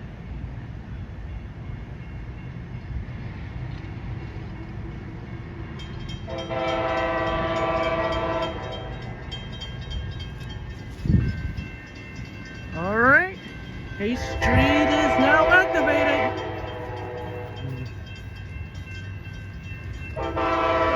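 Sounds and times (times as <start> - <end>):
locomotive horn blast: 6.3 - 8.9, 14.2 - 17.9, 20.2 - 20.9.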